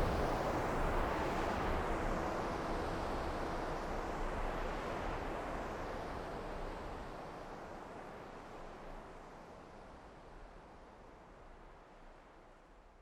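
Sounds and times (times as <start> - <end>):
wind-like rushing noise: 0.0 - 1.2.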